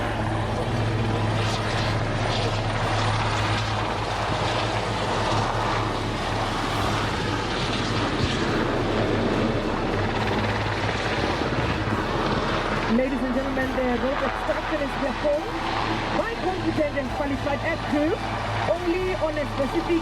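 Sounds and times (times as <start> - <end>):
helicopter engine hum: 0.0 - 20.0.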